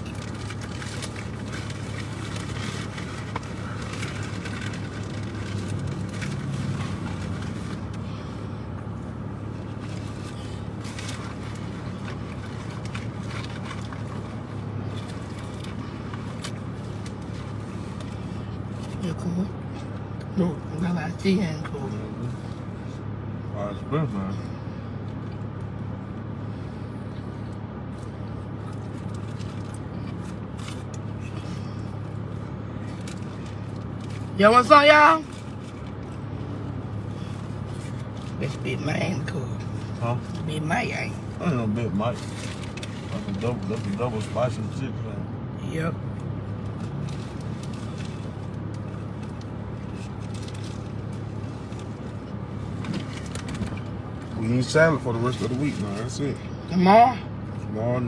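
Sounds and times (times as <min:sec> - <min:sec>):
faint clicks and rustles: 0:00.0 - 0:20.4, 0:25.0 - 0:44.8, 0:46.0 - 0:56.6
car engine humming: 0:00.0 - 0:58.0.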